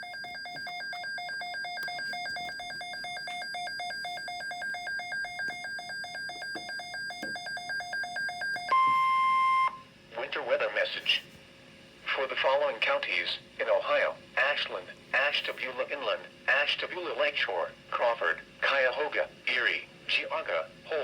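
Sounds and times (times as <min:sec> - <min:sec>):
pulsing electronic warble alarm: 0:00.0 - 0:09.9
steady single-pitch warning tone: 0:00.0 - 0:10.1.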